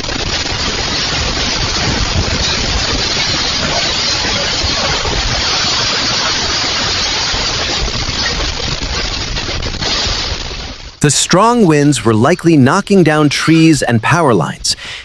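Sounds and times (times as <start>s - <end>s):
wind buffeting microphone: 0.7s - 9.8s.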